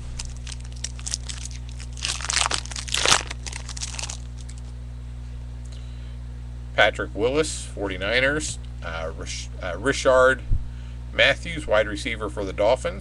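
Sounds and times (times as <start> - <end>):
card pack wrapper crinkling: 0.0 - 4.7
steady low hum: 0.0 - 13.0.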